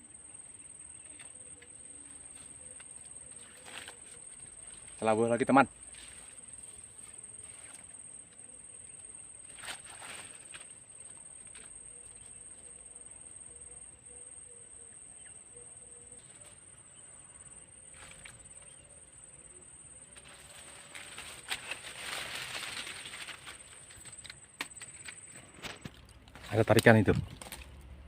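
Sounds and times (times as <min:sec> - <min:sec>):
insects trilling: 0:00.0 - 0:27.8.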